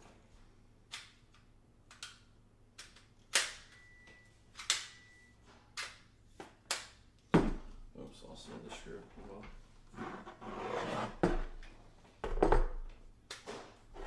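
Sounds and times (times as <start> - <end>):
faint ringing tone: 3.7 - 5.5.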